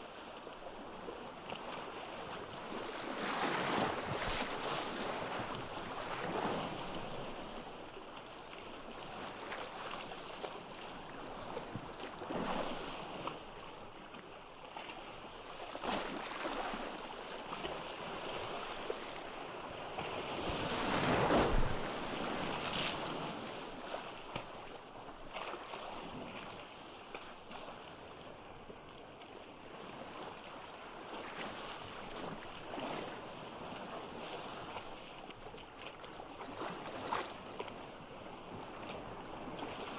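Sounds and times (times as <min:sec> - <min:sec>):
sea waves breaking on beach: 0:18.0 - 0:24.8.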